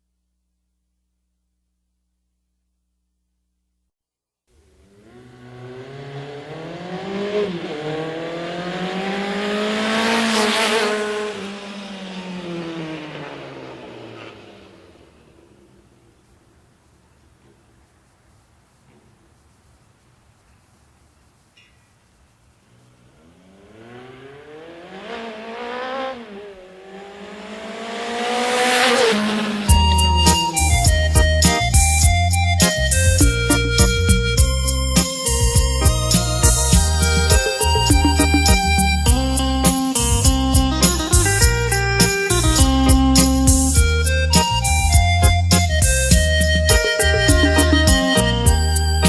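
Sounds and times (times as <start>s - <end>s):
engine revving: 4.5s - 16.3s, 22.7s - 49.0s.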